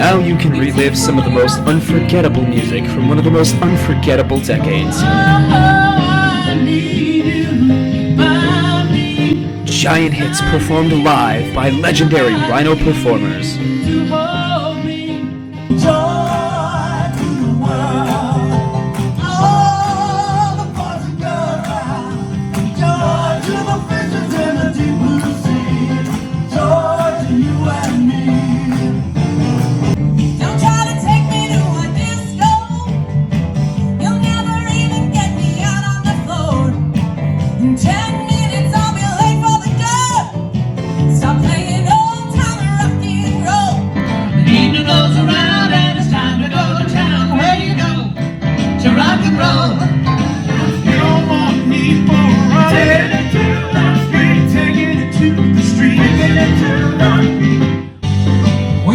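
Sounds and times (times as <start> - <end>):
person singing: 0.0 - 29.1
pop-rock band playing: 0.0 - 58.9.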